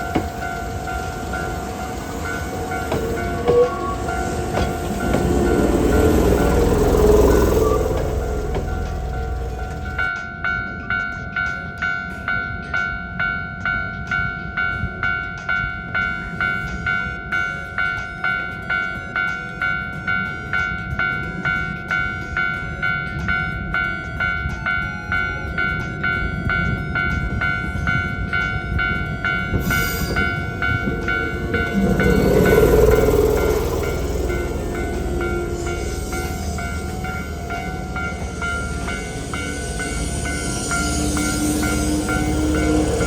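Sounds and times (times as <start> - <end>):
high squeal: 0.0 - 10.1, 29.2 - 43.0
low rumble: 0.0 - 10.1, 29.6 - 43.0
level-crossing bell ringing: 0.0 - 43.0.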